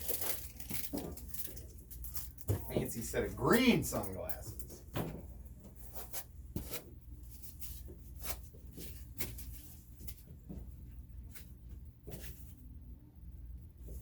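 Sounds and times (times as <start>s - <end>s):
rustling packaging: 0.0s - 4.7s
low steady hum: 0.0s - 14.0s.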